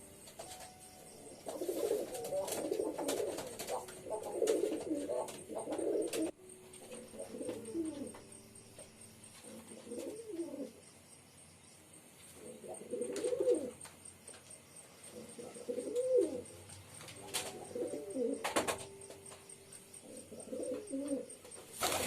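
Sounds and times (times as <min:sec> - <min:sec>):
pigeons cooing: 0:01.3 - 0:08.3, 0:09.4 - 0:10.8, 0:12.4 - 0:13.8, 0:15.1 - 0:16.5, 0:17.3 - 0:18.8, 0:20.0 - 0:22.0.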